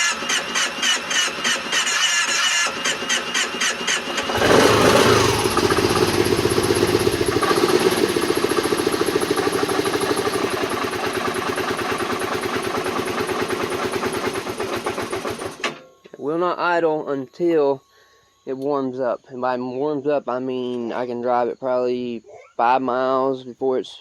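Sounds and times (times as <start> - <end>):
engine running fast and steady: 0.0 - 15.6
engine cranking on starter: 0.0 - 15.8.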